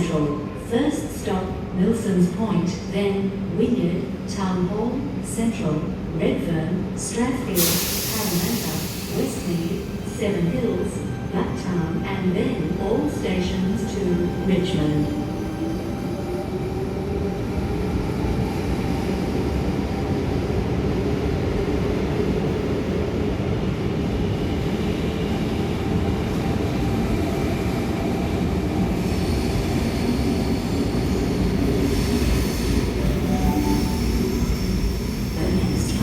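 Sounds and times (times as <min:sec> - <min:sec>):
electric train rumbling: 0:00.0 - 0:36.0
steel wheels squealing on rails: 0:31.6 - 0:36.0.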